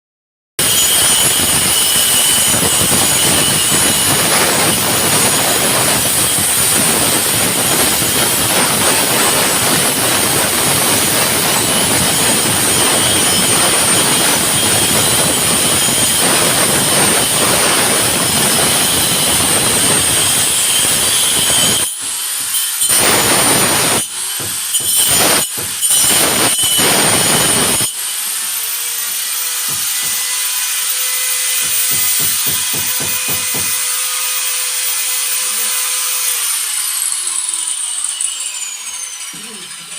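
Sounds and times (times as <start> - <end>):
electric grinder grinding and whining: 0.6 - 39.9.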